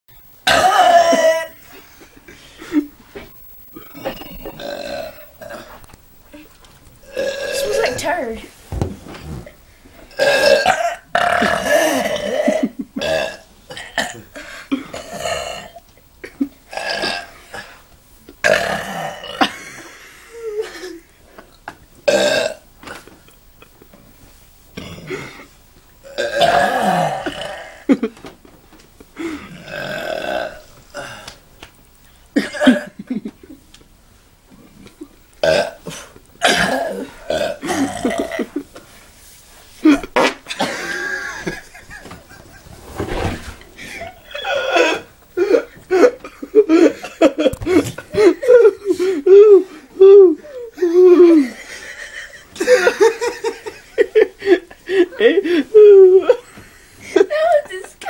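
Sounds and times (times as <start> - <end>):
people belching: 0.5 - 1.5, 4.1 - 8.0, 10.1 - 14.2, 16.7 - 17.6, 18.4 - 19.5, 22.1 - 23.0, 24.8 - 25.4, 26.1 - 27.9, 29.4 - 31.4, 35.4 - 38.5
person burping: 0.5 - 1.5, 4.4 - 8.0, 10.1 - 14.2, 16.7 - 17.6, 18.4 - 19.6, 22.1 - 23.0, 24.8 - 25.4, 26.1 - 27.9, 29.6 - 31.3, 35.4 - 38.5.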